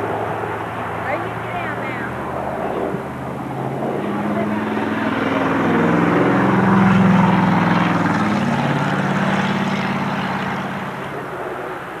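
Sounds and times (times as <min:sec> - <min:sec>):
engine running: 0:00.0 - 0:12.0.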